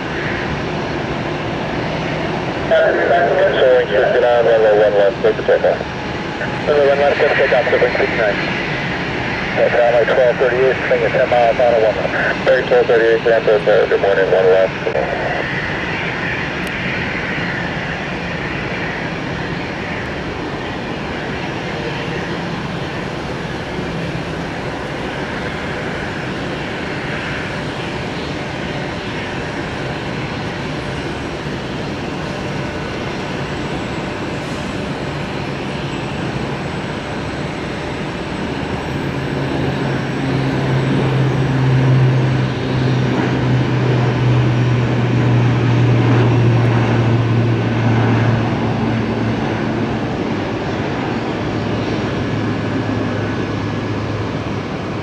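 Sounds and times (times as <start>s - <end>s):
aircraft engines rushing: 0.0s - 55.0s
deep steady drone: 0.0s - 55.0s.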